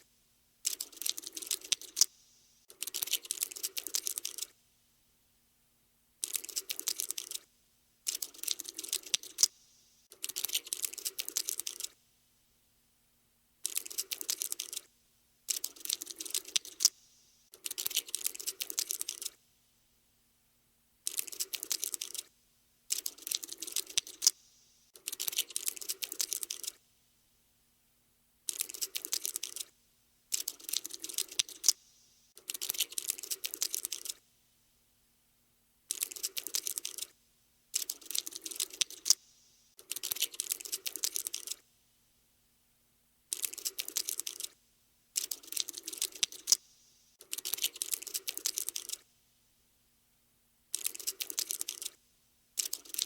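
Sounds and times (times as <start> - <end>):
cockroach scuttling clicks: 0.6 - 2.1, 2.7 - 4.5, 6.2 - 7.4, 8.1 - 12.0, 13.6 - 14.9, 15.5 - 19.4, 21.1 - 22.3, 22.9 - 24.4, 25.0 - 26.8, 28.5 - 29.7, 30.3 - 31.8, 32.4 - 34.2, 35.9 - 37.1, 37.8 - 39.2, 39.8 - 41.6, 43.3 - 44.6, 45.2 - 49.0, 50.7 - 52.0, 52.6 - 53.0.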